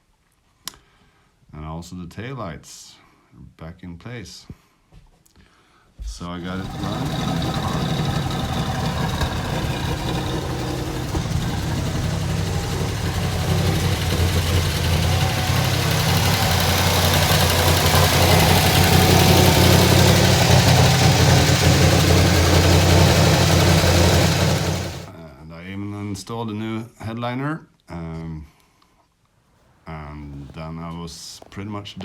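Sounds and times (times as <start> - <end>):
car engine idling: 6.4 - 25.1.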